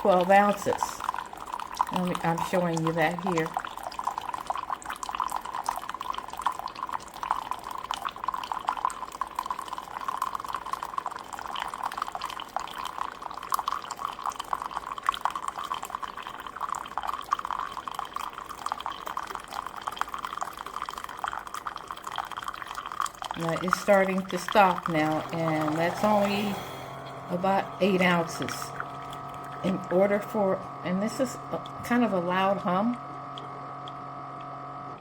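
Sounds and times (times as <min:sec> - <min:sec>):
coffee trickling into cup: 0:00.0 - 0:35.0.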